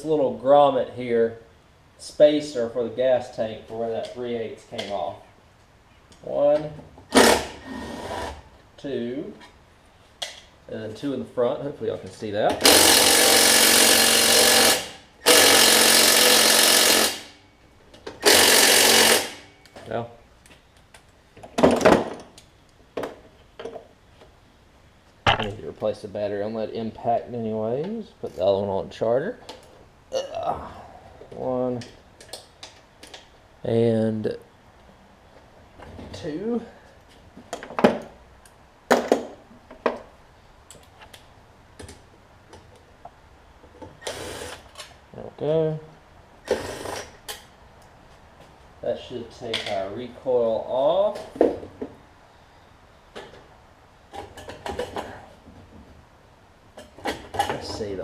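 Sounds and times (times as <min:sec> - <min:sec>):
engine parts and tools clattering: 0:25.2 - 0:25.7, 0:54.1 - 0:55.9, 0:56.8 - 0:57.8
impact tool hammering: 0:25.3 - 0:25.6.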